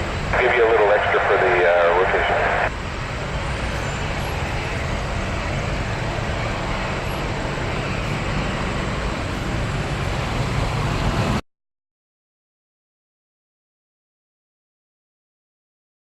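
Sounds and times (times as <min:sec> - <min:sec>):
jet engine roar: 0:00.0 - 0:11.4.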